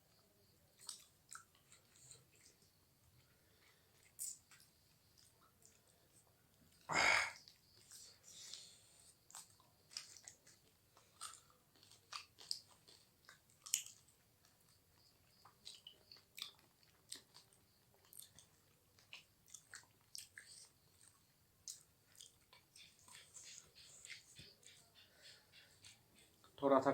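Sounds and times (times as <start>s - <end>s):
person chewing food: 0.7s - 26.6s.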